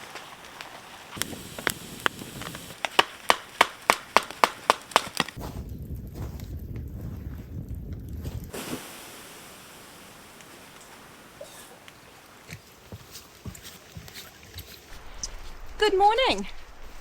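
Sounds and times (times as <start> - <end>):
sharp wooden knocks: 2.8 - 5.4
low rumbling noise: 5.4 - 11.3.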